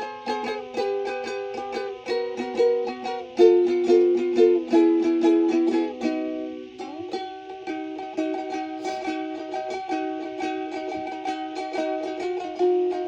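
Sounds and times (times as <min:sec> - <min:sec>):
plucked string instrument tune: 0:00.0 - 0:13.0.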